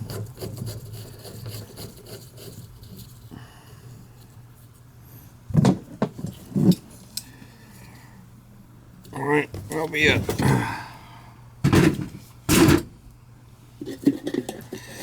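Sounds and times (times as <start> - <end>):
scraping and rubbing on wood: 0.0 - 3.3.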